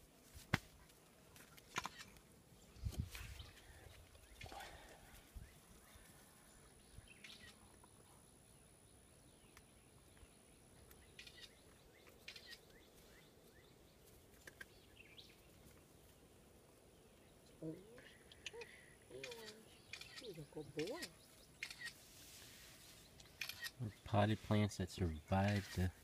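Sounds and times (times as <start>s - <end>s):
faint chirps: 2.8s - 13.8s.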